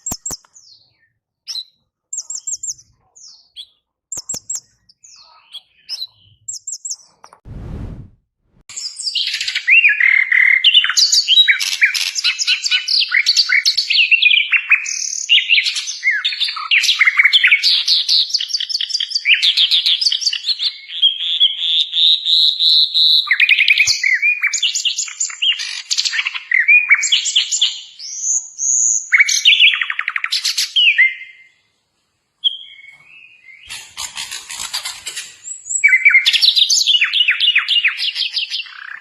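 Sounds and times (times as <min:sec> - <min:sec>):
songbird singing: 0:00.0 - 0:07.3, 0:32.4 - 0:39.0.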